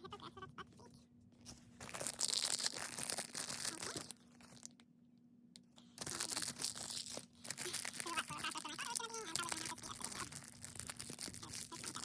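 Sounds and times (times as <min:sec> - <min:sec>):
plastic packaging crinkling and tearing: 0:01.7 - 0:04.8, 0:06.0 - 0:12.0.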